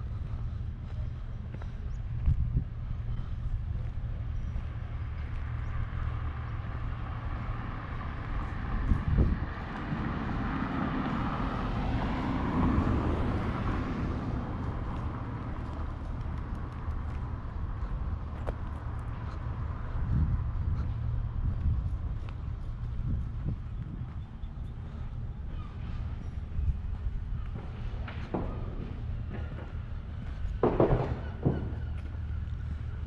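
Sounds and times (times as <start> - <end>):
low traffic rumble: 0.0 - 33.0
vehicle passing: 0.0 - 33.0.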